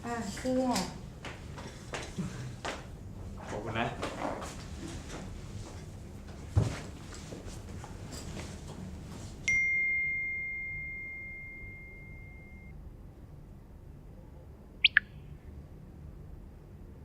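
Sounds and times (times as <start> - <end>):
bell-like ding: 9.5 - 12.7
sharp falling chirps: 14.8 - 15.1.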